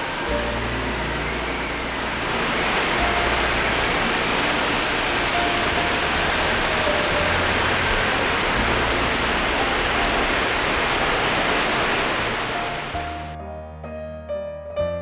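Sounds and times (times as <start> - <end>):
waterfall rushing: 0.0 - 13.3
piano music: 0.0 - 15.0.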